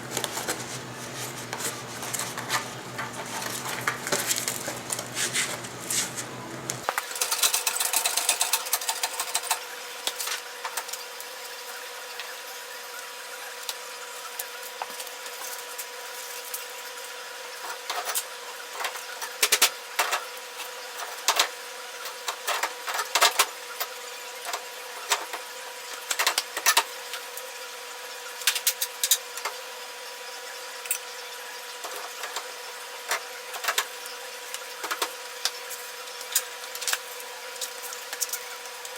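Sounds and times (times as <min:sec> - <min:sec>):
steady electrical hum: 0:00.0 - 0:12.2.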